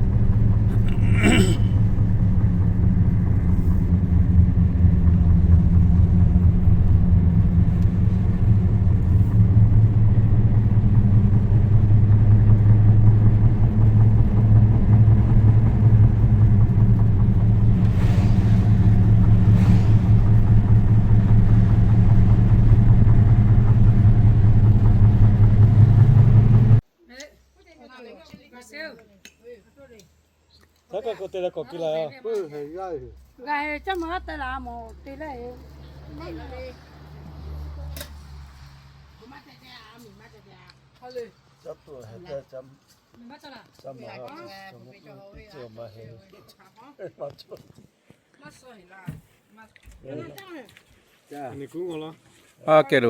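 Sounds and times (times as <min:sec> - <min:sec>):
motor vehicle drone: 0:00.0 - 0:26.8, 0:33.7 - 0:39.4.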